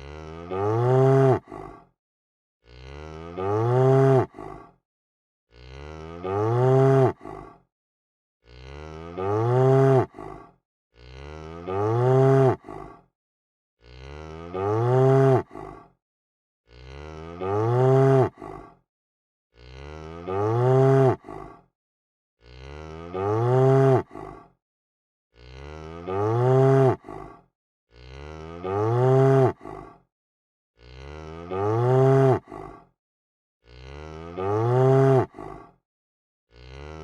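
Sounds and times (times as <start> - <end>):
cow mooing: 0.0 - 1.5, 2.7 - 4.3, 5.5 - 7.2, 8.5 - 10.1, 11.0 - 12.7, 13.8 - 15.5, 16.7 - 18.4, 19.6 - 21.3, 22.5 - 24.1, 25.4 - 27.1, 27.9 - 29.6, 30.8 - 32.5, 33.7 - 35.4, 36.5 - 37.0.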